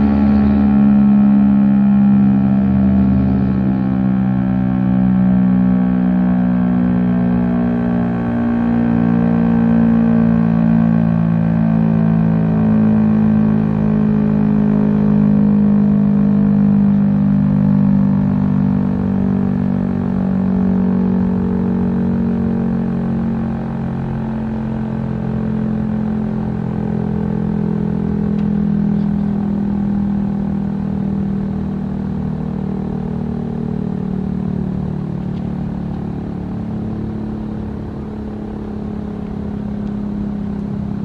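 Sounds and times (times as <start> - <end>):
low steady warning siren: 0.0 - 41.0.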